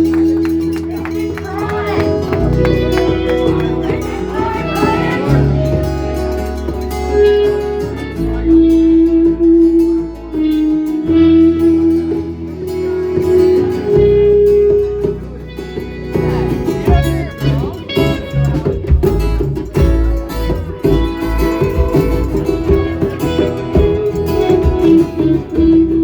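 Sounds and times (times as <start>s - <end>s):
guitar: 0.0s - 26.0s
held bass notes: 0.0s - 26.0s
live band playing: 0.0s - 26.0s.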